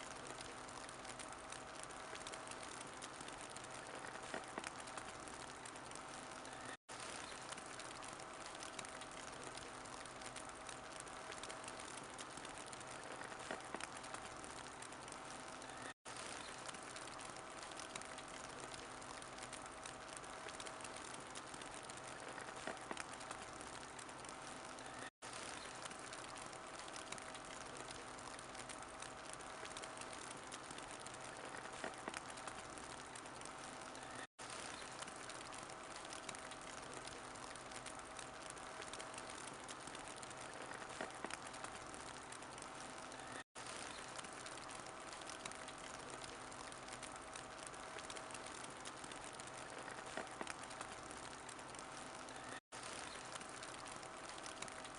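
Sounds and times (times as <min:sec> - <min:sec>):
small pops: 0:00.0 - 0:54.9
wood fire crackling: 0:00.0 - 0:54.9.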